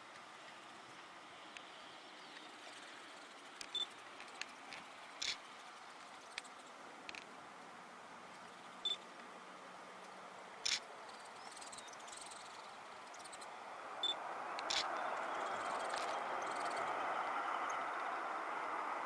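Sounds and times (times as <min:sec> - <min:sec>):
sharp clicks: 0:03.6 - 0:05.4, 0:10.6 - 0:10.8, 0:14.6 - 0:15.0
distant jet noise: 0:10.7 - 0:19.0.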